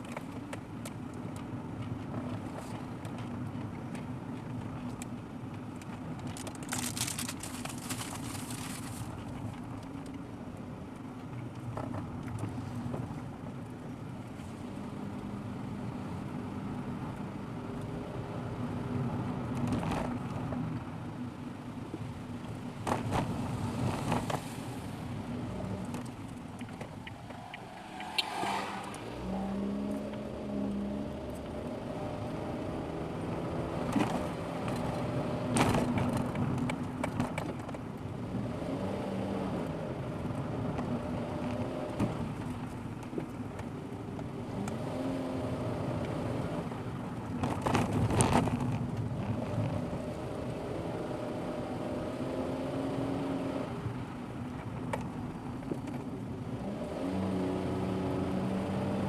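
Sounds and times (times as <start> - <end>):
car engine running: 0.0 - 38.5
tyre and road noise: 0.0 - 59.0
short rush of noise: 27.1 - 29.6.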